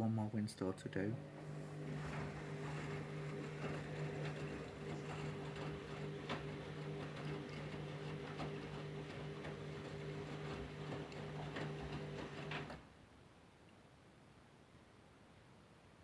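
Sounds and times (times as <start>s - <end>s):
washing machine motor humming: 0.7s - 12.8s.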